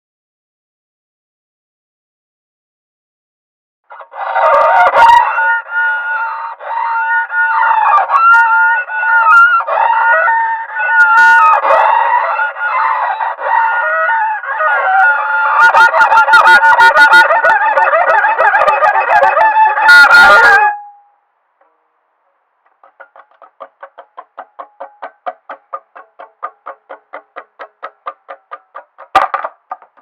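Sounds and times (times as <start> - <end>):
shrill wavering pitched tones: 15.6 - 21.2.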